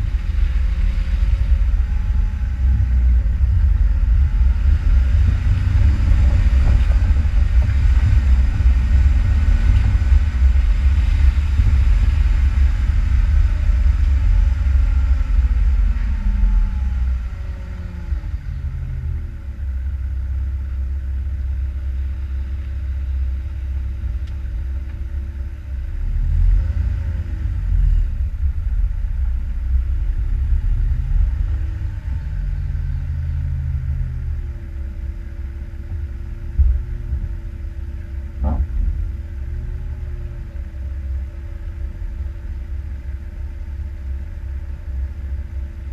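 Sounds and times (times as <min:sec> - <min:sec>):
off-road vehicle engine rumbling: 0:00.0 - 0:45.9.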